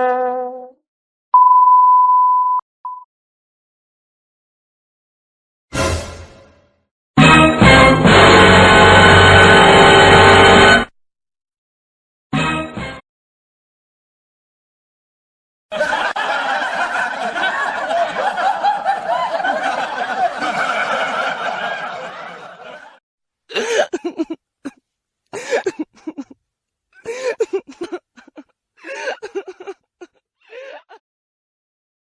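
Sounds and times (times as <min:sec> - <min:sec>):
crowd laughing: 0:15.7 - 0:23.0, 0:27.0 - 0:30.2
person sobbing: 0:23.5 - 0:24.4, 0:25.4 - 0:26.4, 0:27.0 - 0:29.8, 0:30.5 - 0:31.0.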